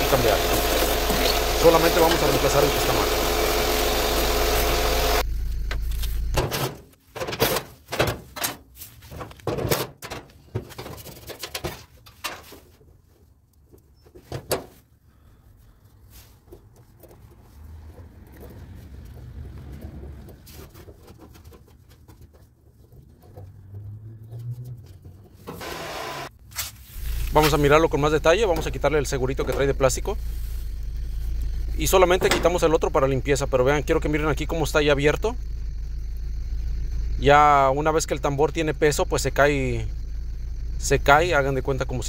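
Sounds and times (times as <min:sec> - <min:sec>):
motor running loudly: 0:00.0 - 0:06.0, 0:25.6 - 0:26.3
metal and plastic parts clattering: 0:06.4 - 0:13.0.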